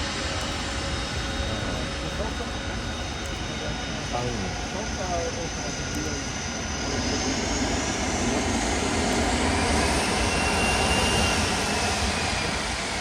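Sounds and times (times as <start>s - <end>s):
faint high engine whine: 0.0s - 13.0s
jet airliner engines rushing: 0.0s - 13.0s.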